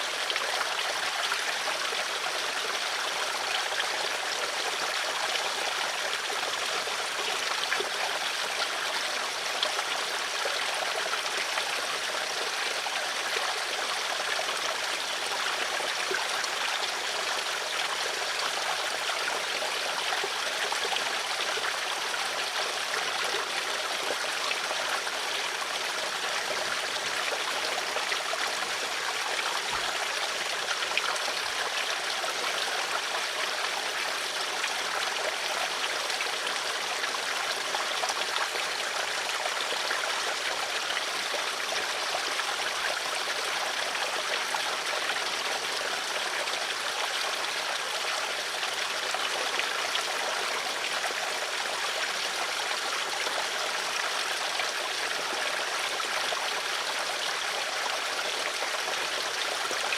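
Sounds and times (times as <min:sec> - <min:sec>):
stream of water babbling: 0:00.0 - 0:59.9.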